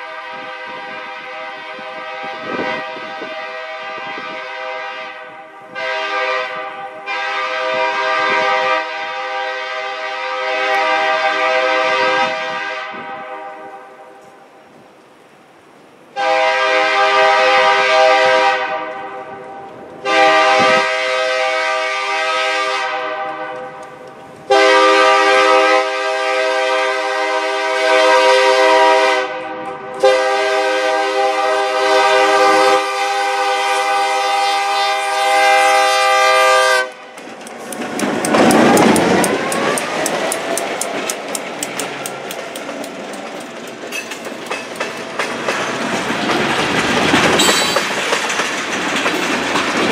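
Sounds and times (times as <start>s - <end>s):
locomotive air horn blasts: 0.0s - 14.0s, 16.2s - 19.4s, 20.0s - 23.8s, 24.5s - 37.0s
wheels clicking over rail joints: 23.3s - 24.5s, 36.8s - 49.9s
diesel engine passing: 37.0s - 47.1s.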